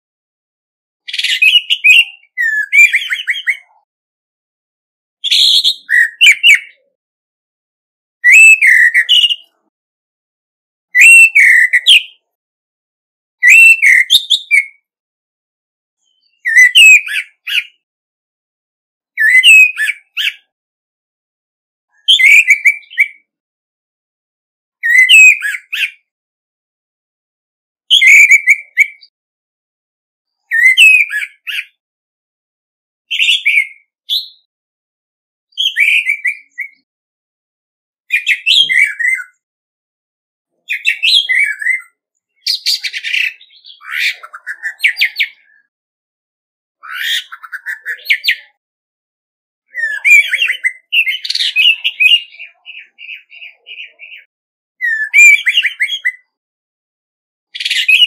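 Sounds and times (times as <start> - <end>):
thrush singing whistled phrases: 1.0 - 3.8, 5.2 - 7.0, 8.2 - 9.7, 10.9 - 12.3, 13.4 - 14.9, 16.0 - 17.8, 19.2 - 20.5, 21.9 - 23.3, 24.8 - 26.1, 27.9 - 29.1, 30.4 - 31.8, 33.1 - 34.5, 35.5 - 36.9, 38.1 - 39.4, 40.5 - 45.7, 46.8 - 48.6, 49.7 - 56.4, 57.6 - 58.0.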